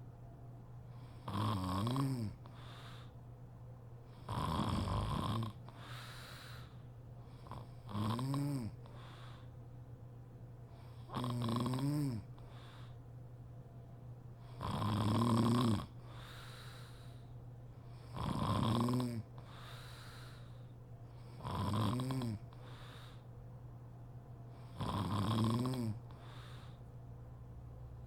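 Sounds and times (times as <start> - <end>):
woman snoring: 1.1 - 2.4, 4.2 - 6.0, 7.4 - 8.8, 11.0 - 12.3, 14.6 - 16.8, 18.1 - 20.3, 21.3 - 22.5, 24.7 - 26.7
soft breaths out: 2.4 - 3.3, 5.7 - 7.4, 8.8 - 9.6, 12.4 - 13.1, 16.0 - 18.0, 19.4 - 21.2, 22.5 - 23.4, 26.1 - 27.0.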